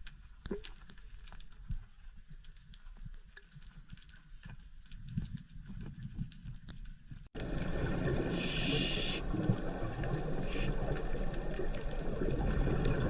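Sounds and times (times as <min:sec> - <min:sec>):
faint underwater clicks: 0:00.0 - 0:13.0
dense water noise with hissy surges: 0:07.4 - 0:13.0
low underwater rumble: 0:07.4 - 0:13.0.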